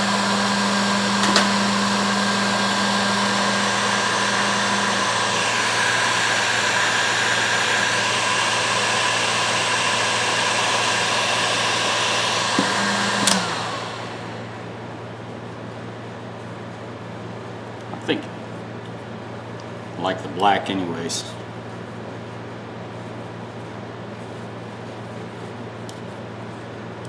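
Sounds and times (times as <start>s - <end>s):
heat gun blowing: 0.0s - 15.0s
heat gun switch click: 1.2s - 1.7s, 12.5s - 13.8s.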